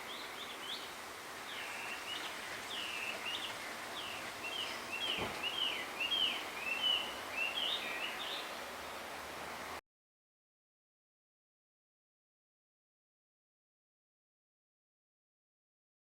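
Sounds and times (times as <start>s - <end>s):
bird singing whistled notes: 0.0s - 0.9s, 1.5s - 8.6s.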